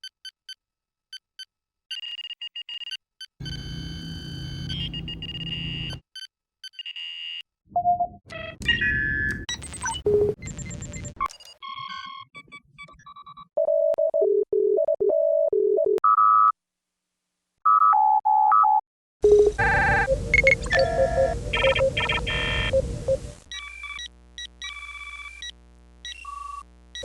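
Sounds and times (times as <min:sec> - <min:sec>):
electronic console beeps: 0:08.5 - 0:13.7, 0:19.6 - 0:25.4
steady low hum: 0:19.6 - 0:23.5
loud hiss and rumble: 0:20.0 - 0:23.5.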